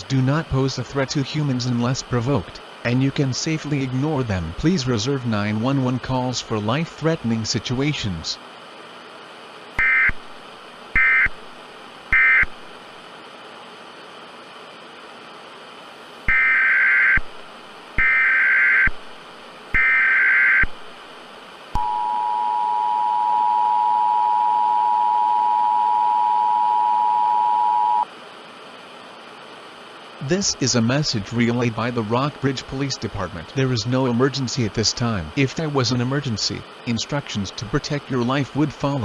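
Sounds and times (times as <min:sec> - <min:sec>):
screechy data bursts: 0:11.0 - 0:11.4, 0:12.1 - 0:12.5, 0:16.3 - 0:17.3, 0:18.0 - 0:19.0, 0:19.7 - 0:20.7
two-tone attention signal: 0:21.8 - 0:28.0.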